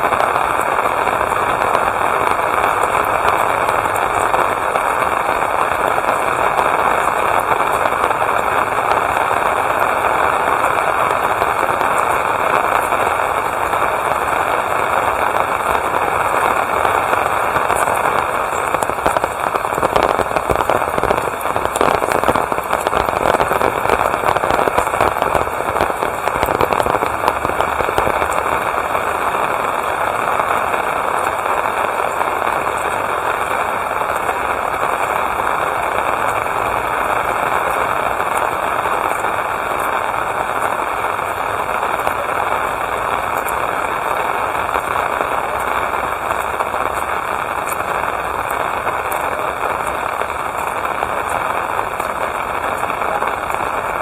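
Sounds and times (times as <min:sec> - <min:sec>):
rain falling: 0:00.0 - 0:54.0.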